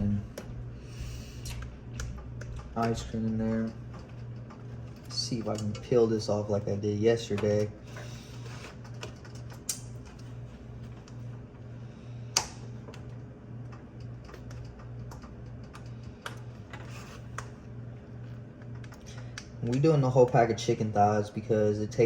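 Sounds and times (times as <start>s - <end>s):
pulsing low hum: 0.0s - 5.5s.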